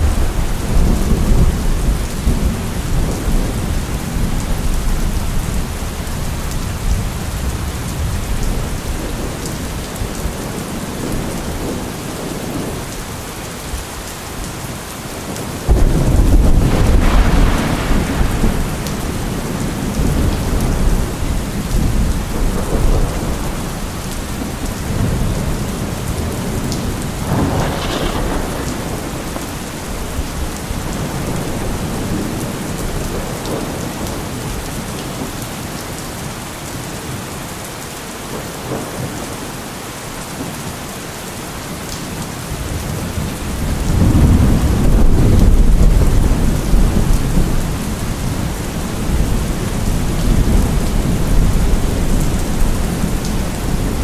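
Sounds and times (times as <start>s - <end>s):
thunder rumbling: 0.0s - 14.5s, 15.1s - 35.2s, 42.5s - 54.0s
steady rain: 0.0s - 54.0s
loud thunderclap: 15.7s - 34.2s, 43.0s - 54.0s.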